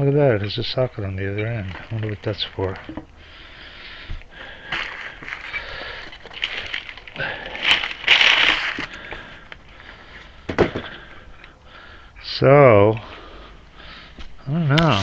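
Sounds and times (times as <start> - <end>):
packaging rustling and crinkling: 1.0 - 3.2, 4.1 - 9.9.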